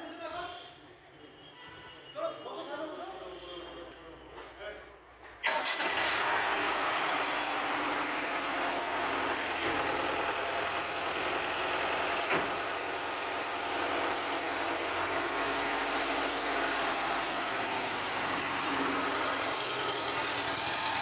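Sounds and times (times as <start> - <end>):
vehicle engine running: 5.9 - 21.0.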